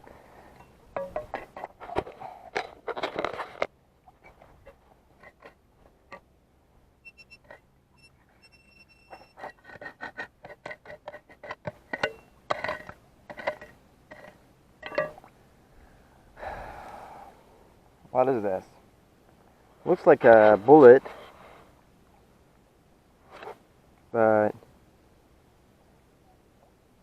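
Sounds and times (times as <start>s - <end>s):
metal detector beeps: 7.0s - 9.4s.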